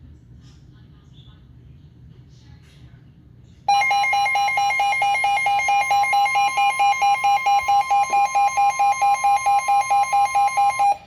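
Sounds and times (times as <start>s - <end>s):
rapid pulsing beeps: 3.7s - 11.0s
steady high alert tone: 3.7s - 11.0s.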